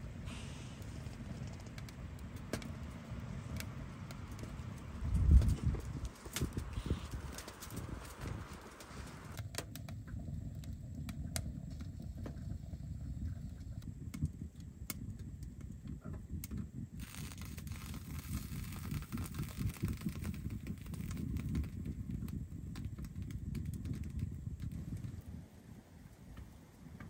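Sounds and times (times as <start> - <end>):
wind hiss: 0.0 - 9.4, 16.9 - 27.0
wind buffeting microphone: 0.0 - 27.0
sharp clicks and crunches: 0.8 - 12.3, 16.1 - 25.2.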